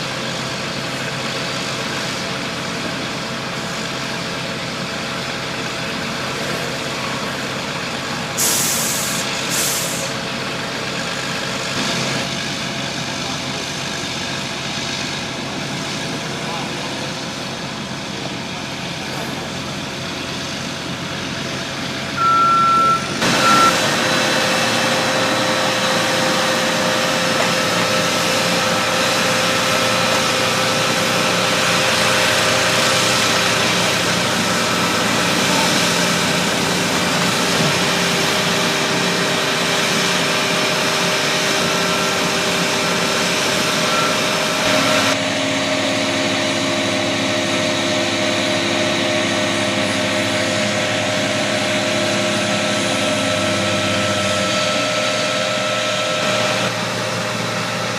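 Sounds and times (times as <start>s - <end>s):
diesel engine running: 0.0s - 57.9s
high-pitched beeps: 22.2s - 23.8s.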